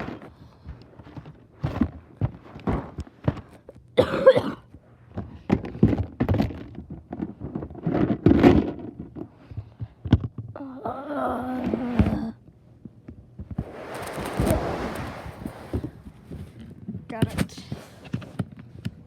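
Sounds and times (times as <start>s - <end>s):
objects thunking and knocking: 0.0s - 10.8s
box dragged: 13.6s - 16.6s.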